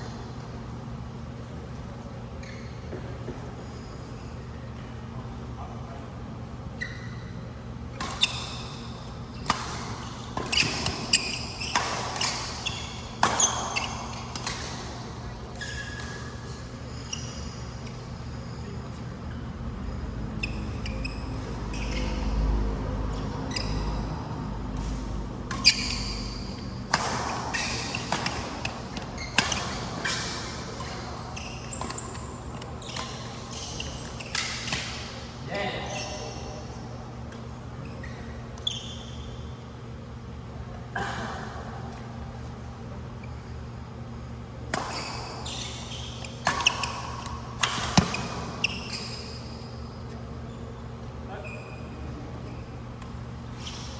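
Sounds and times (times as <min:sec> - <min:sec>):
shoes squeaking on court: 0:00.0 - 0:05.0, 0:06.6 - 0:40.4, 0:42.4 - 0:53.9
racket smacking shuttlecock: 0:24.8 - 0:33.4, 0:46.4 - 0:48.6.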